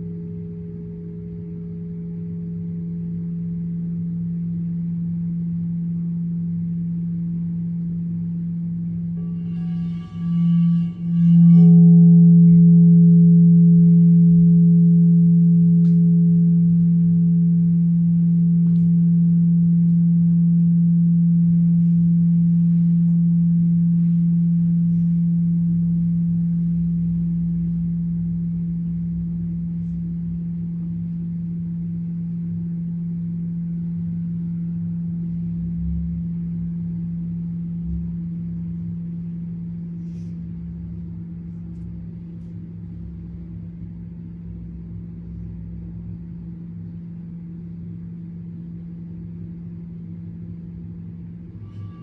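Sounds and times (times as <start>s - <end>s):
low ringing tone: 0.0s - 52.0s.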